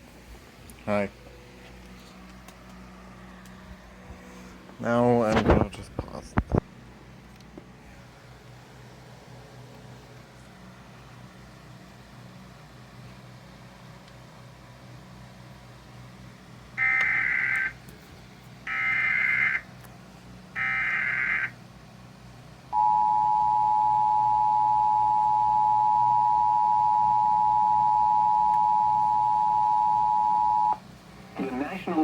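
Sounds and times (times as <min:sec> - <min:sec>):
two-tone attention signal: 0:22.8 - 0:30.8.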